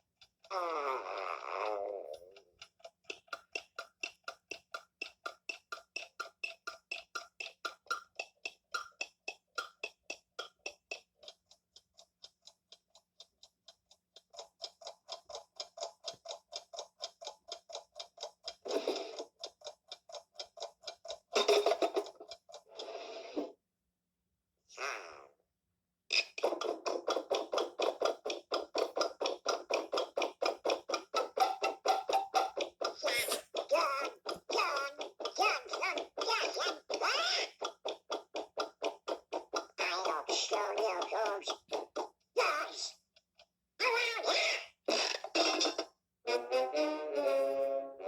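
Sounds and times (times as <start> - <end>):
clock ticking: 0.0 - 1.4, 2.0 - 23.0, 26.1 - 46.6
drawn-out pitched sounds: 26.1 - 43.0.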